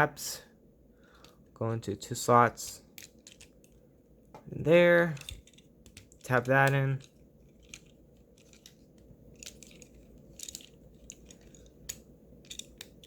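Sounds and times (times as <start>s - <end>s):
plastic toy parts clicking: 2.9s - 3.8s, 5.0s - 13.0s.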